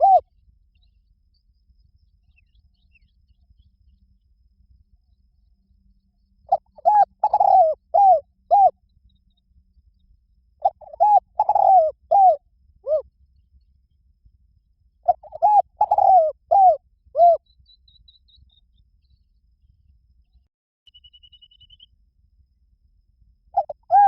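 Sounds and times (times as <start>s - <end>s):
dove cooing: 0.0s - 0.2s, 6.5s - 8.8s, 10.6s - 13.0s, 15.1s - 17.4s, 23.6s - 24.0s.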